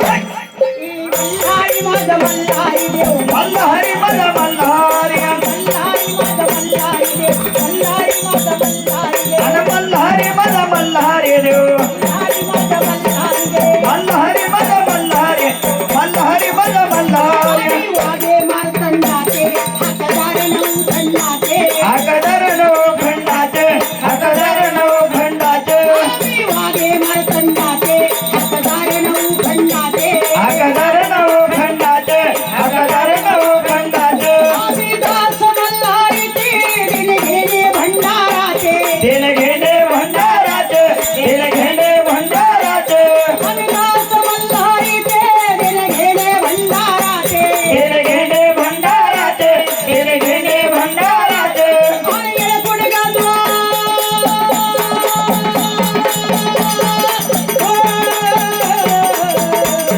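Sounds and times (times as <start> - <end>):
wavering melody: 0.0 - 22.5
shaken rattle beat: 1.1 - 59.9.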